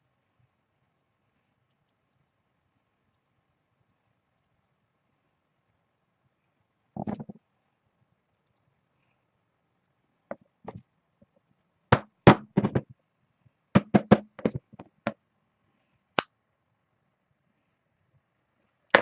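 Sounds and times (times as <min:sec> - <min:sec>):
sharp hard knocks: 0:11.9 - 0:12.9, 0:13.8 - 0:14.9.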